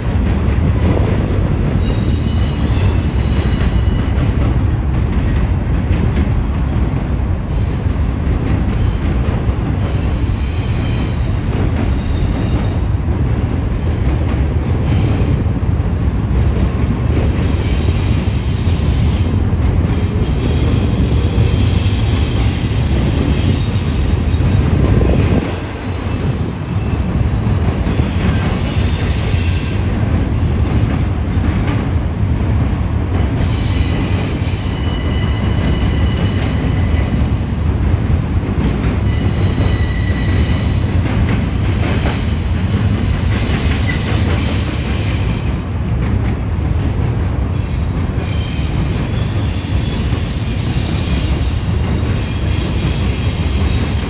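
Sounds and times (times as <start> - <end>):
freight train wheels rumbling on rail: 0.0 - 54.0
high wheel squeal: 9.8 - 11.3, 20.2 - 30.0, 33.4 - 37.7, 39.0 - 45.6, 48.2 - 54.0.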